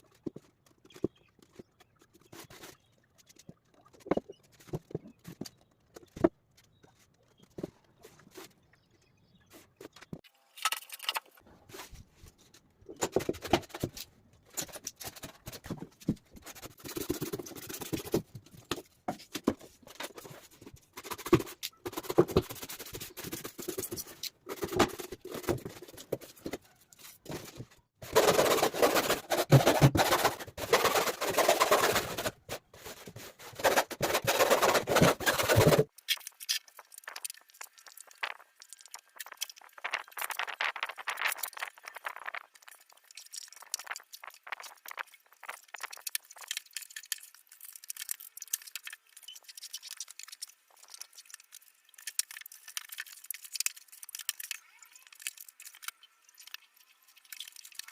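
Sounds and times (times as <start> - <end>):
scraping and rubbing: 10.9 - 37.2.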